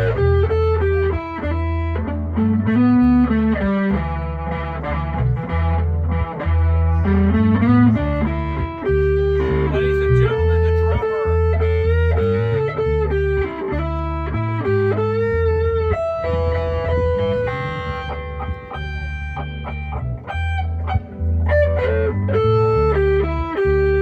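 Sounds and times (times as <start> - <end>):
bass line: 0.0 - 24.0
electric guitar melody: 0.0 - 24.0.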